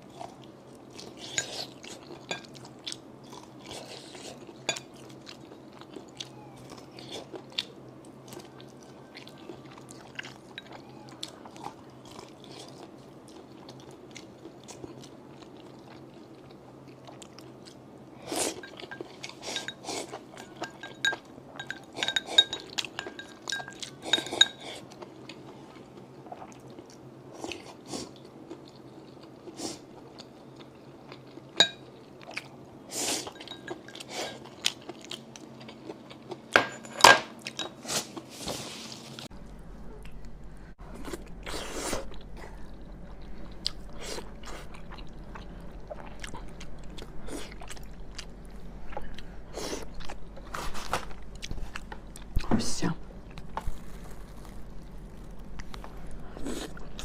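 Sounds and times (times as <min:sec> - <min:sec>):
faint low hum: 0:00.0 - 0:37.6, 0:38.9 - 0:57.0
utensils clinking: 0:18.5 - 0:24.7, 0:31.6 - 0:31.9, 0:33.2 - 0:34.5, 0:36.6 - 0:37.8
chewing and crunchy bites: 0:53.3 - 0:57.0.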